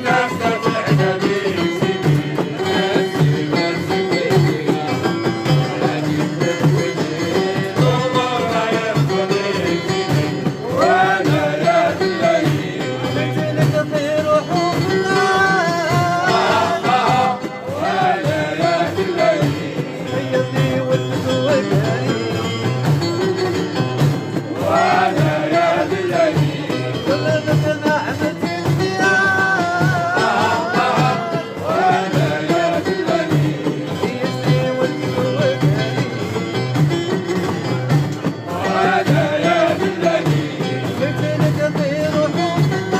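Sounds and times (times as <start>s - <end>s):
person singing ornamented phrases: 0.0s - 10.1s
folk instrumental accompaniment: 0.0s - 42.9s.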